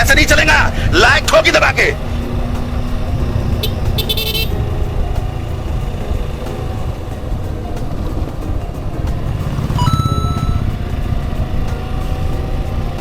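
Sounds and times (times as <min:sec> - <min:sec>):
motorcycle engine running: 0:00.0 - 0:13.0
vehicle horn toots: 0:03.6 - 0:04.7.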